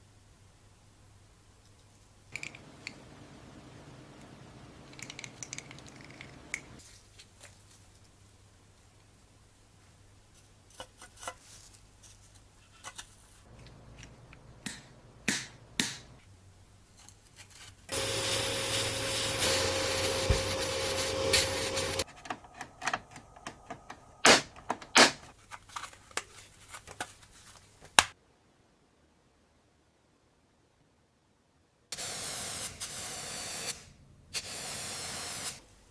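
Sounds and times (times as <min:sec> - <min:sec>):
power tool whine and hiss: 0:17.9 - 0:22.0.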